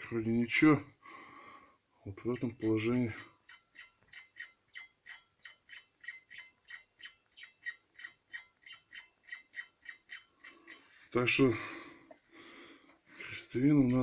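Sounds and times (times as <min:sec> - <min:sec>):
driveshaft joint squeaking: 0:02.2 - 0:11.5, 0:13.2 - 0:14.0.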